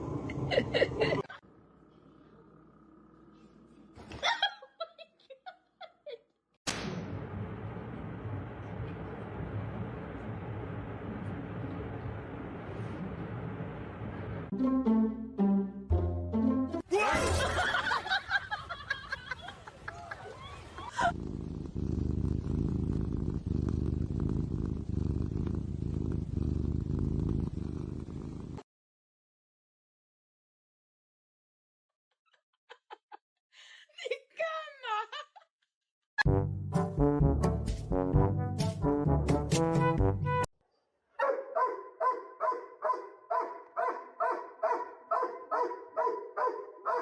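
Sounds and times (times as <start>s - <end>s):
cat purring loudly: 20.9s - 28.6s
dog barking: 41.2s - 47.0s.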